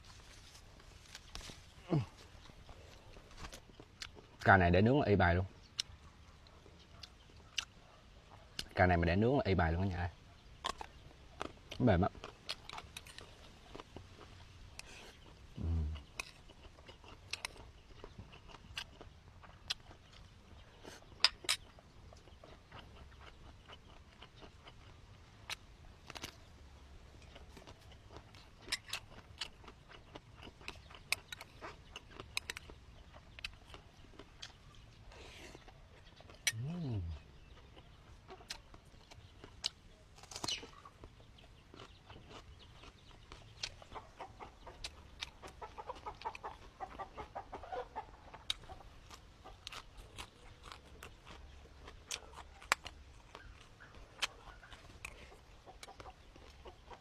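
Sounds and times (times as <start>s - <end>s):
person chewing: 0.0s - 4.5s, 5.7s - 8.8s, 10.6s - 26.5s, 27.1s - 47.2s, 48.3s - 57.0s
chickens clucking: 29.7s - 57.0s.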